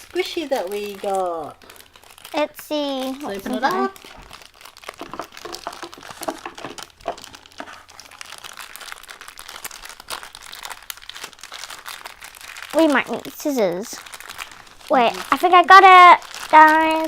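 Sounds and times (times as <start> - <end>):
plastic packaging crinkling: 0.0 - 17.0.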